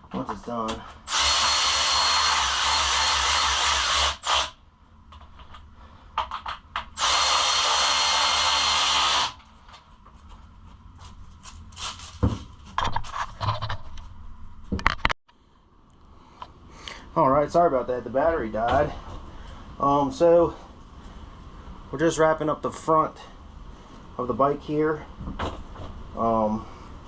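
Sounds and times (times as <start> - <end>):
power drill running: 1.0 - 4.6, 7.0 - 9.4.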